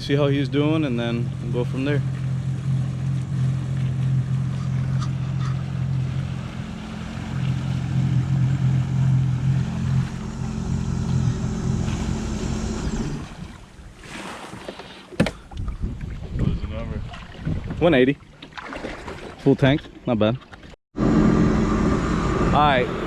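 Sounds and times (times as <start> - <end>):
watercraft engine running: 0.0 - 15.0, 21.0 - 23.0
water noise: 0.0 - 23.0
wind noise: 15.4 - 18.0.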